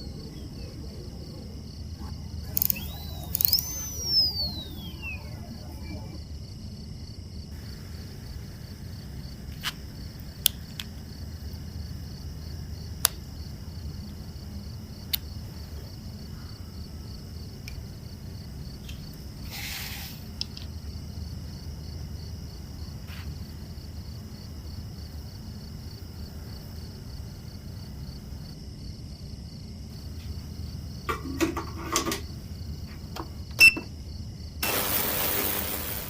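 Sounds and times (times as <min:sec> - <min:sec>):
steady low hum: 0:00.0 - 0:19.4
faint high whine: 0:00.0 - 0:28.5, 0:29.8 - 0:36.0
brief hiss: 0:19.5 - 0:20.3, 0:34.6 - 0:36.0.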